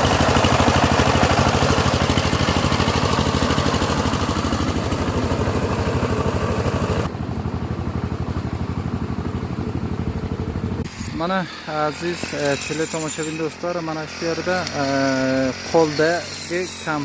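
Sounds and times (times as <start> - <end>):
small engine running: 0.0 - 17.0
mechanical clatter: 12.0 - 13.6.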